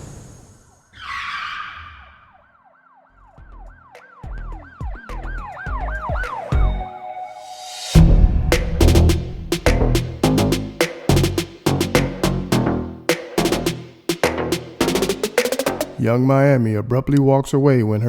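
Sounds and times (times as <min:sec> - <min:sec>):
warbling siren-like tone: 0:00.9 - 0:08.0
whoosh: 0:07.5 - 0:10.3
low thumps: 0:08.0 - 0:12.8.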